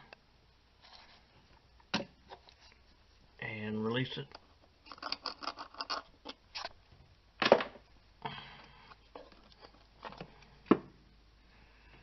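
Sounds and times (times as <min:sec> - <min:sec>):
tools and metal parts clicking: 0:04.9 - 0:06.1.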